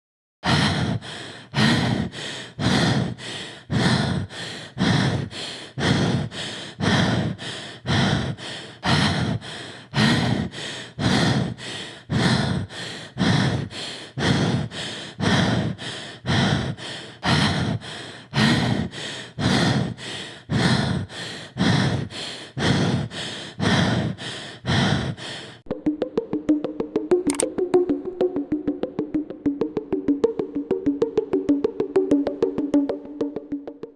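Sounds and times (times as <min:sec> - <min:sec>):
woman gasping: 0:00.4 - 0:25.6.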